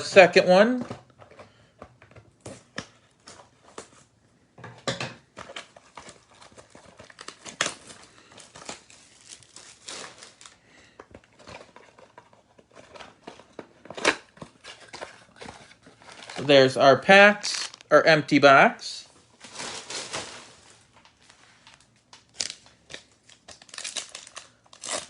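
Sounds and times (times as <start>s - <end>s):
packaging crinkling and rustling: 5.3s - 16.5s, 17.3s - 17.9s, 19.1s - 25.0s.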